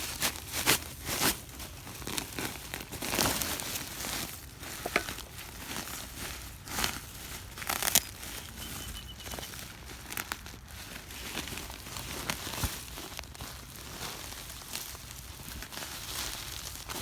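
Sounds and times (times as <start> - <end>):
bag crinkling and tearing: 0.0 - 17.0
sharp crackles: 6.7 - 10.5.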